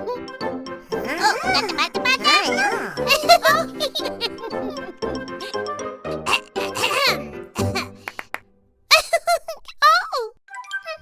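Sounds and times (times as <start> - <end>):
playful cartoon music: 0.0 - 8.3, 10.5 - 11.0
squeaky sliding cartoon voice: 1.0 - 3.0.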